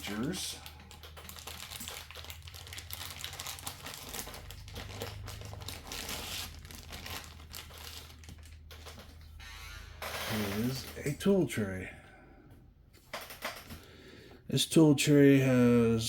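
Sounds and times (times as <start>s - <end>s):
packaging crinkling: 0.0s - 9.2s.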